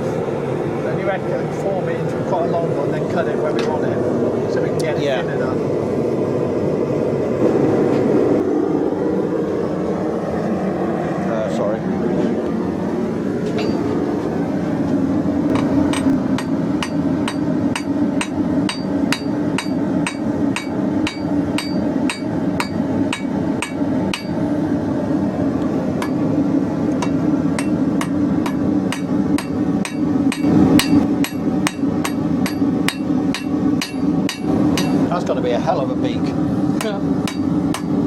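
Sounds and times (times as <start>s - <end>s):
hammer striking hot steel on anvil: 13.5s - 13.9s, 15.5s - 24.4s, 26.0s - 26.2s, 27.0s - 35.1s, 36.8s - 38.0s.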